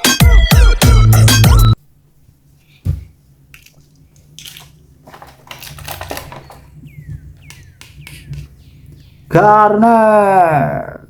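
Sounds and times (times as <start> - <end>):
plastic pieces clicking: 4.3 - 6.8
plastic squeaks: 4.5 - 8.4.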